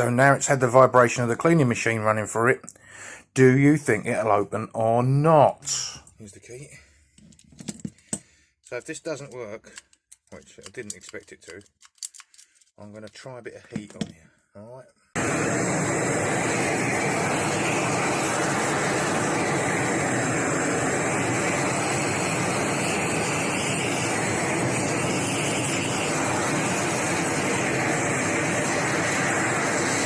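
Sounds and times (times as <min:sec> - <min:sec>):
blowtorch flame burning: 0:15.2 - 0:30.0.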